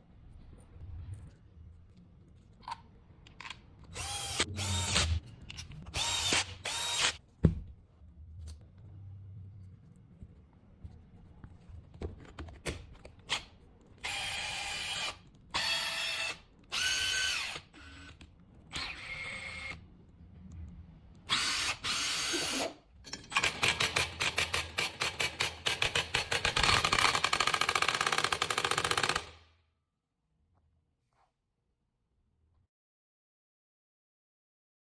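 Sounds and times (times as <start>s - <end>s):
impact wrench whining: 4.0s - 5.2s, 5.9s - 7.2s, 21.3s - 29.4s
impact wrench hammering rattle: 23.1s - 29.4s.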